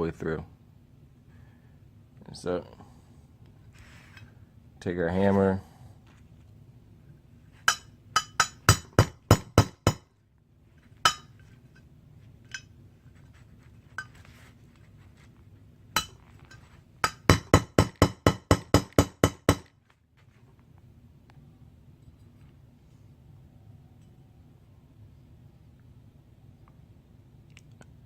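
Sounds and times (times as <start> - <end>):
hammer tapping metal pin: 7.7 - 10.1, 11.0 - 11.4, 16.0 - 19.7.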